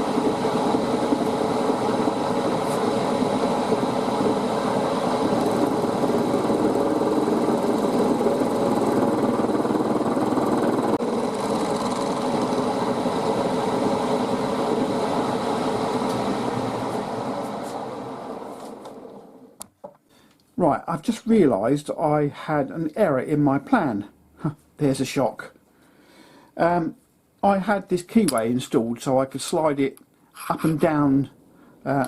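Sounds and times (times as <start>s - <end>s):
milling machine running: 0.0s - 19.5s.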